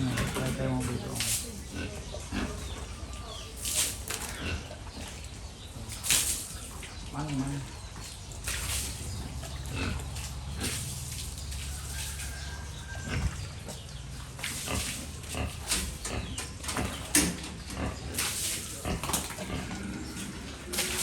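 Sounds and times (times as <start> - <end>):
pigs making short calls: 8.4 - 21.0.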